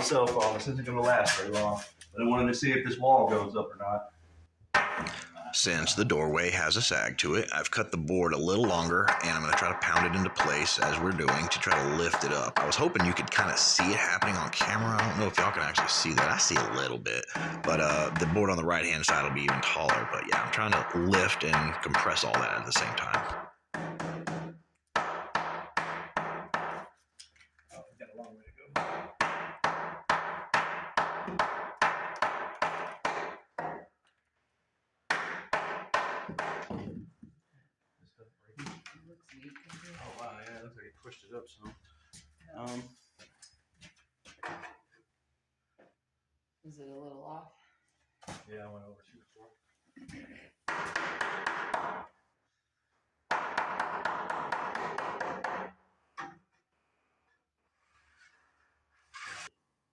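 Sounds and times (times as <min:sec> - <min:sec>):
hammer striking wood: 0:04.7 - 0:05.2, 0:08.5 - 0:18.5, 0:19.1 - 0:26.9, 0:28.8 - 0:33.9, 0:35.1 - 0:36.8, 0:50.7 - 0:52.1, 0:53.3 - 0:56.3.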